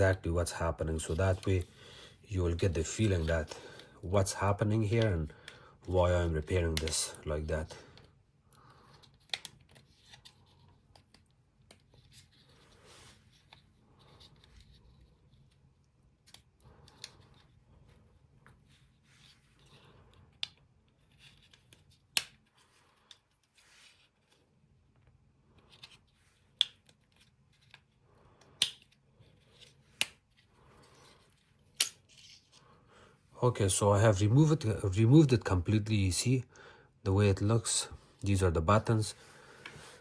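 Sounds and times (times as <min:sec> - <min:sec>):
plastic tabs snapping and clicking: 0:28.4 - 0:29.0.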